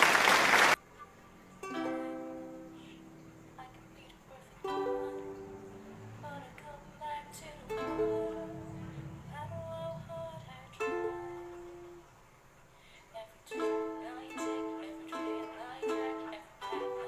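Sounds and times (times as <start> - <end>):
plucked chords: 7.5 - 12.1.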